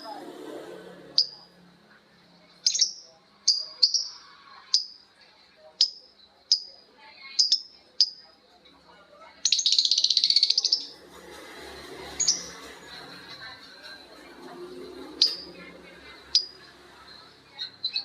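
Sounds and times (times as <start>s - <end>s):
bird chirping: 1.1s - 1.5s, 2.5s - 5.0s, 5.7s - 8.3s, 9.4s - 11.0s, 11.9s - 13.2s, 15.1s - 18.0s
bird chattering trill: 2.6s - 4.2s, 7.4s - 8.2s, 9.4s - 11.0s.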